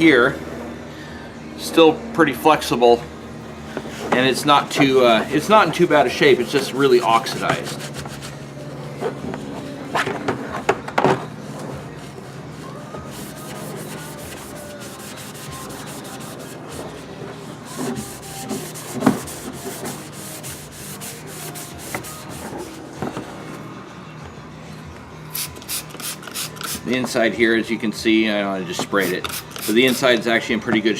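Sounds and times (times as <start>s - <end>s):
scrubbing pad on plastic: 13.2s - 16.6s, 17.7s - 22.8s.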